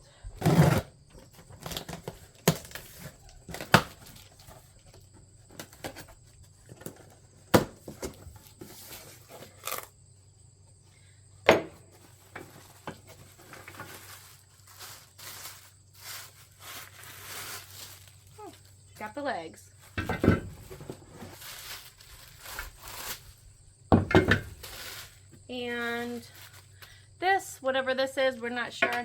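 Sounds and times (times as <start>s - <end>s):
packaging tearing and crinkling: 1.6s - 4.5s, 9.5s - 9.9s, 13.4s - 18.6s, 21.4s - 23.4s.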